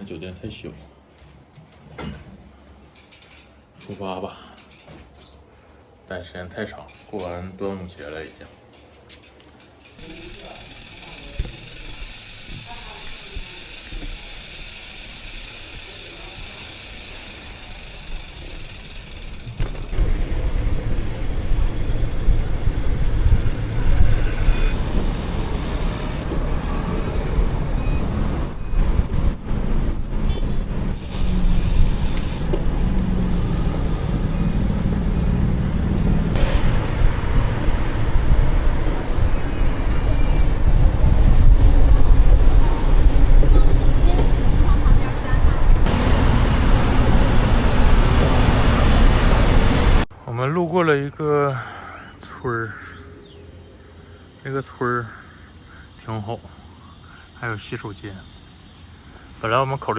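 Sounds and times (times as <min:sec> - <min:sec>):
road traffic low rumble: 0:10.0 - 0:50.1.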